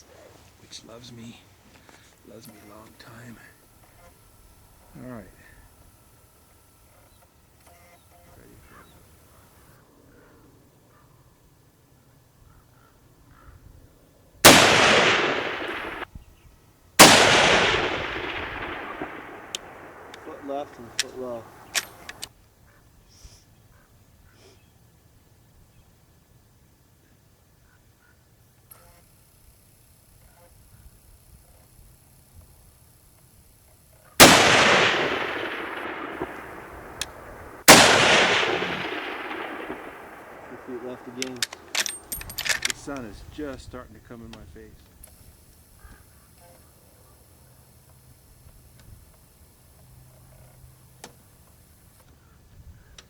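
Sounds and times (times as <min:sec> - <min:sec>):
rifle shots with rolling echo: 0:14.4 - 0:16.2, 0:17.0 - 0:22.3, 0:34.2 - 0:43.0
faint click: 0:36.2 - 0:37.2.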